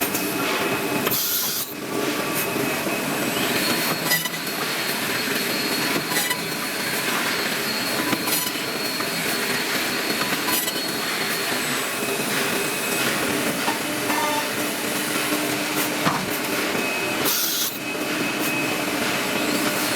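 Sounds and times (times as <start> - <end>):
high machine whine: 0.0 - 19.9.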